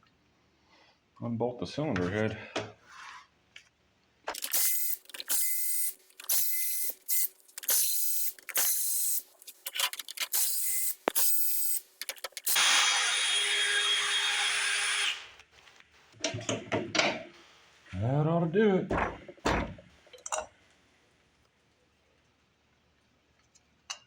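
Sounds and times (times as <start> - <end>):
power tool running in bursts: 12.5 - 15.2.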